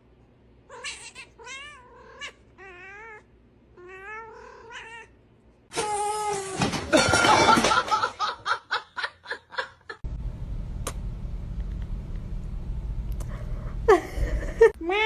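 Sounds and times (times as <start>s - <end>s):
low rumble: 10.0s - 14.7s
person laughing hard: 13.9s - 14.8s.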